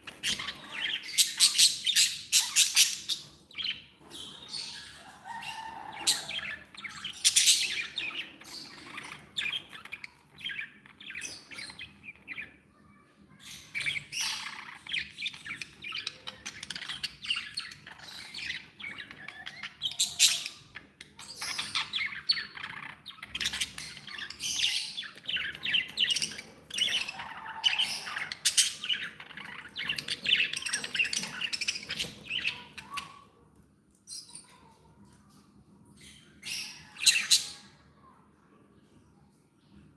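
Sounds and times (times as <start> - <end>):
budgerigars chattering: 13.8 - 33.2.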